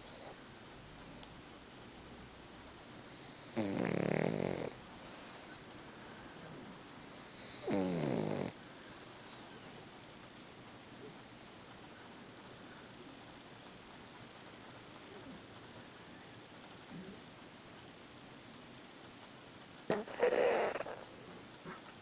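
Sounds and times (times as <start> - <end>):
dog snoring: 0.0 - 0.4, 3.1 - 5.2, 6.5 - 8.6, 19.9 - 21.1.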